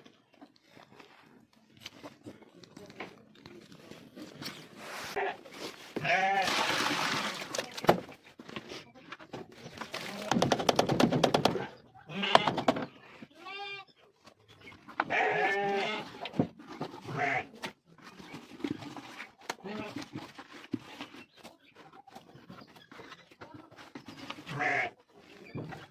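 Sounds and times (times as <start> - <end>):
sheep bleating: 6.0 - 6.6, 15.1 - 16.1, 24.5 - 25.0.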